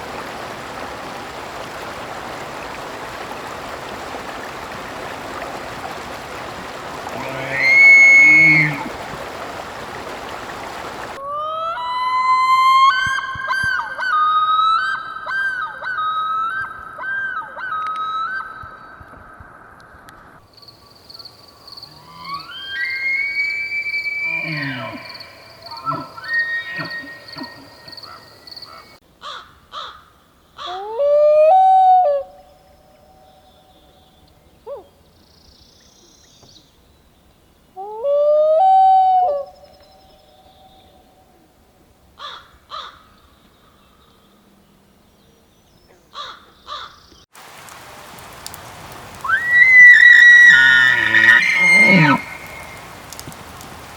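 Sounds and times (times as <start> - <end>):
elk bugling: 0.0 - 11.2, 22.0 - 28.9, 49.2 - 53.5
loon calling: 0.0 - 18.5, 22.0 - 30.0, 30.6 - 32.5, 37.8 - 40.9, 49.2 - 53.5
loon wailing: 7.0 - 9.0, 22.0 - 27.8, 49.3 - 53.2.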